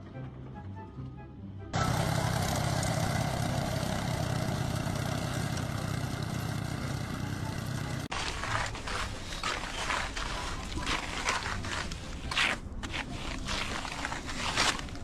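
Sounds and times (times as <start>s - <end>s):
engine running steadily: 1.8s - 15.0s.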